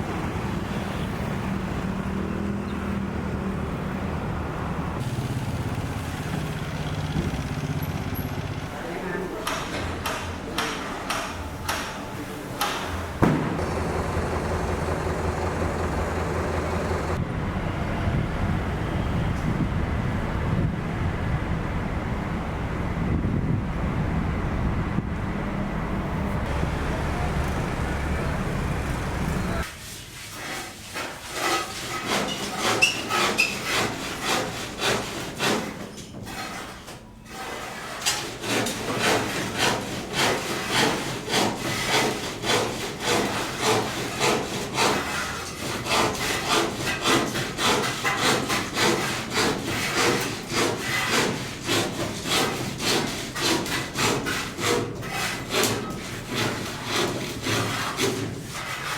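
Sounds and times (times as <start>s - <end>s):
hand tool rubbing strokes: 36.3s - 58.9s.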